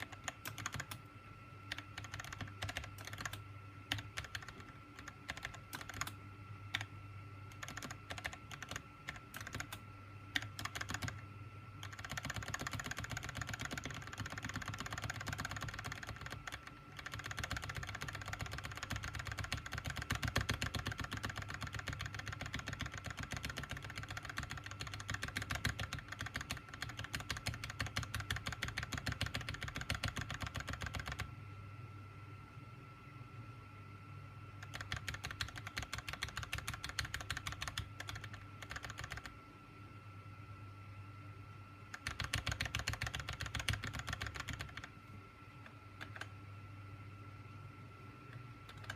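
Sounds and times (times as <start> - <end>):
mechanical keyboard typing: 0.0 - 6.9, 7.5 - 11.2, 11.8 - 31.3, 34.6 - 39.4, 41.9 - 44.9, 46.0 - 46.4, 48.3 - 48.9
faint steady hum: 0.0 - 48.9.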